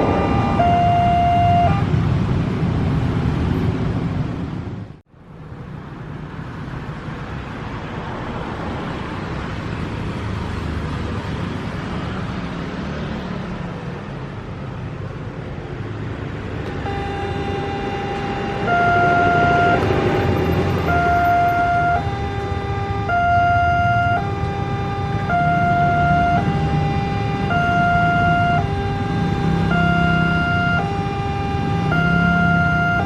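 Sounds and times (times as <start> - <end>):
level crossing two-tone alarm: 0.0 - 1.8, 16.8 - 20.0, 20.8 - 24.4, 31.8 - 33.0
road traffic rumbling: 0.0 - 33.0.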